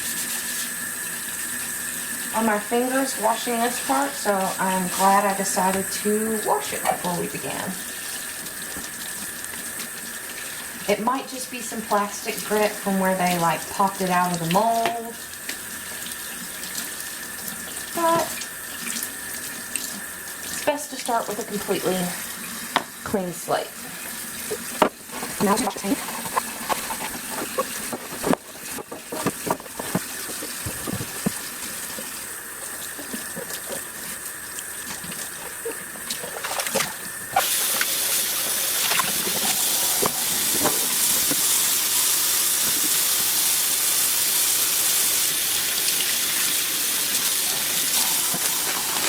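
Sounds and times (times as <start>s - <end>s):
tap water running in sink: 0.0s - 49.0s
plastic knocking against sink: 24.8s - 31.5s.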